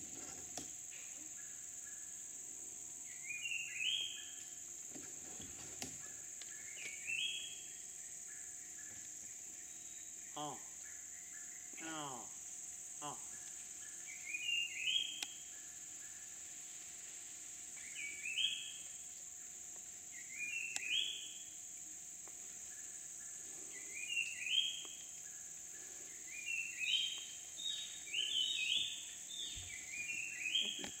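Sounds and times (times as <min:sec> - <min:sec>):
high-pitched insect drone: 0:06.0 - 0:16.6.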